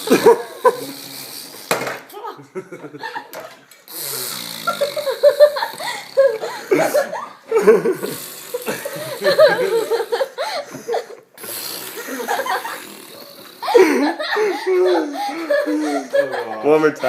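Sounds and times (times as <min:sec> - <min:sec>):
girl making fake fart noise: 0:00.0 - 0:02.4, 0:03.9 - 0:07.0, 0:07.8 - 0:10.4, 0:11.4 - 0:14.2
giggling laughter: 0:02.3 - 0:03.6, 0:04.7 - 0:11.3, 0:12.0 - 0:17.0.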